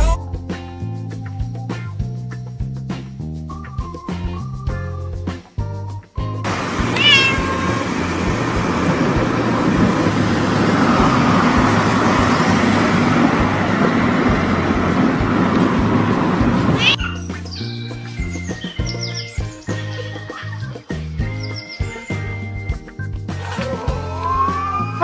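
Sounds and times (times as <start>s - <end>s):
music: 0.0s - 25.0s
loud steady noise: 6.5s - 16.9s.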